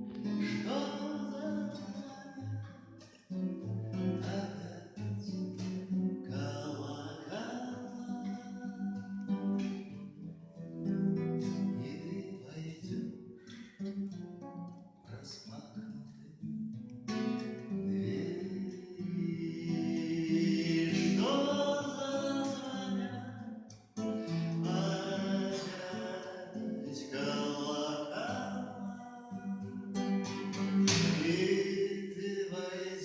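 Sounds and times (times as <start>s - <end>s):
person singing: 0.0s - 2.8s, 4.0s - 9.8s, 11.4s - 13.2s, 17.7s - 33.0s
strummed acoustic guitar: 0.0s - 33.0s.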